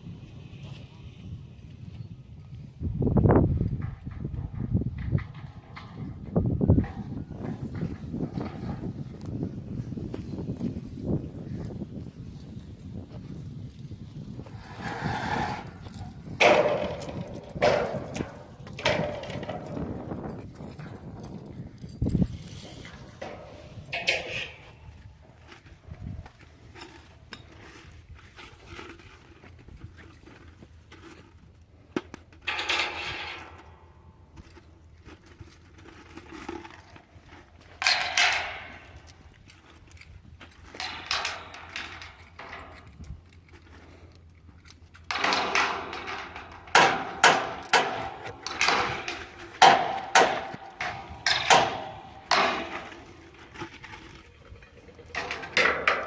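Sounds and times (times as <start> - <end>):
rattling scraping bursts: 14.4 - 21.1, 45.0 - 56.0
metal parts clinking: 15.6 - 25.6, 32.3 - 56.0.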